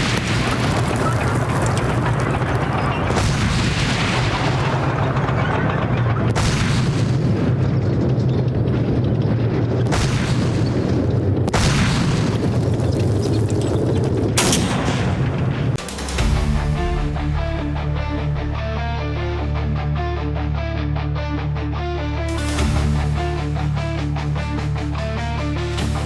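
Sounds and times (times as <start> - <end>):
rumble of explosions and gunfire: 0.0 - 26.0
sudden loud blasts: 14.3 - 19.6.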